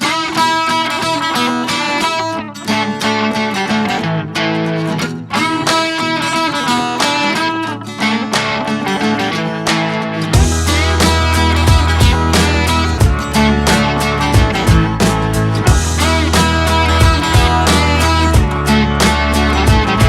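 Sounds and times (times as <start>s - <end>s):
strummed and plucked guitar: 0.0s - 20.0s
steady beat: 9.7s - 20.0s.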